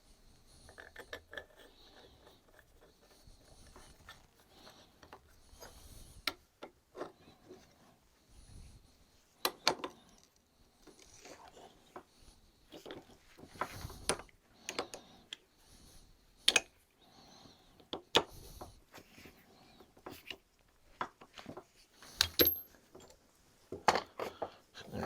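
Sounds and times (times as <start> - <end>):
metal tools clicking and knocking: 22.1 - 23.2.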